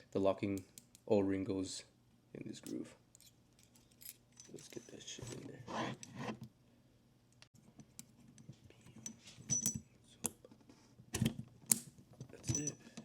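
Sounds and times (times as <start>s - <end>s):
metallic clicks of parts handled: 2.6s - 5.1s, 11.7s - 13.0s.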